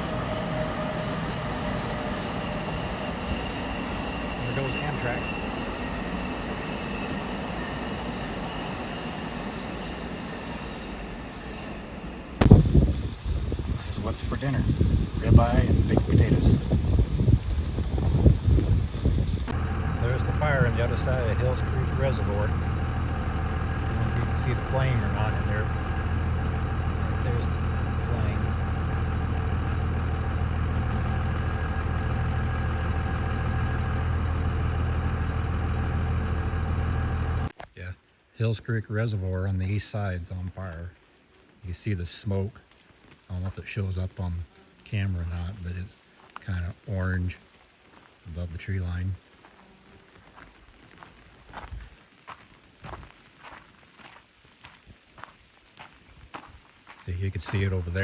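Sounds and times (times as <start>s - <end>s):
vehicle engine idling: 0.0s - 6.6s, 12.4s - 37.5s, 57.1s - 58.0s
train wheels rumbling on rails: 0.0s - 37.5s, 56.9s - 58.0s.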